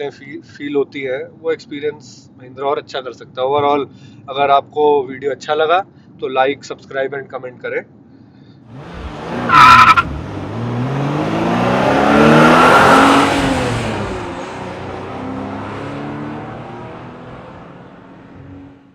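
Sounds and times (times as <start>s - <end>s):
car driving past: 8.7s - 18.9s.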